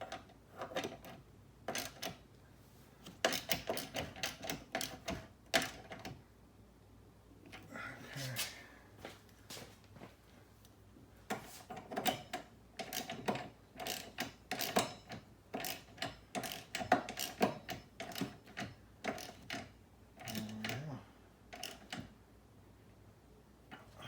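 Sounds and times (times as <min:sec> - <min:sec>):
ratchet wrench clicking: 0:13.8 - 0:14.9, 0:15.6 - 0:18.3.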